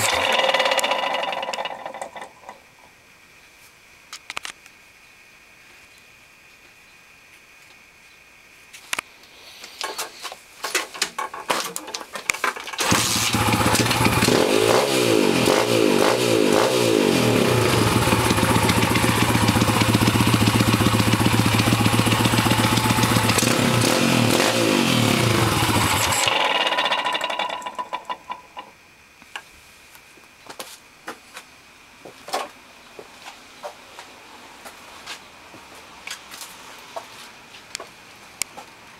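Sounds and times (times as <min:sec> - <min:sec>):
motorbike engine revving: 0:00.0 - 0:02.3, 0:12.8 - 0:28.3.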